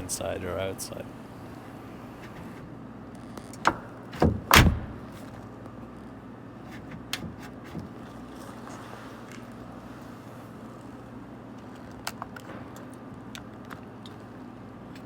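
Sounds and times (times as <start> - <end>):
steady low hum: 0.0 - 11.8
knocks and clicks of car door parts: 3.6 - 5.2.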